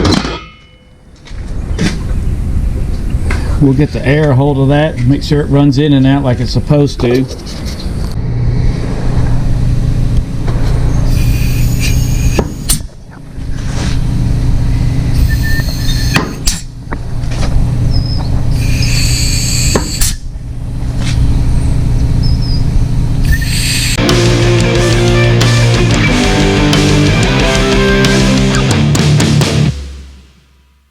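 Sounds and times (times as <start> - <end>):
low hum: 7.4 - 30.9
compressed air hissing: 11.1 - 12.8, 18.6 - 20.2, 23.3 - 24.0.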